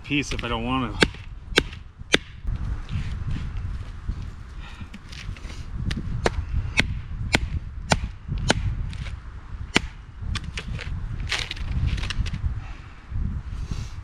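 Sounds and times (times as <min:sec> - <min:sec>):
firewood splitting strikes: 0:00.3 - 0:02.5, 0:05.9 - 0:11.6.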